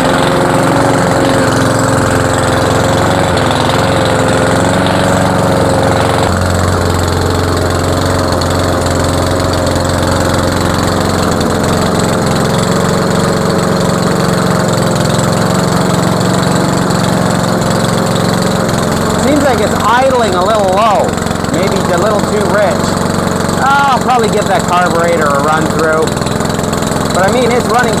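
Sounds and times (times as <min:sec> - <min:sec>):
lawn mower engine running: 0:00.0 - 0:28.0.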